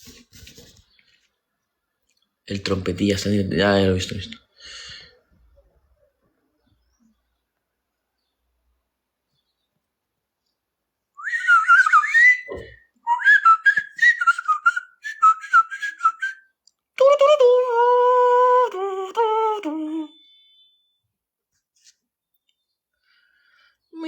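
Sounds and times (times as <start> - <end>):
person whistling: 11.2 - 16.5.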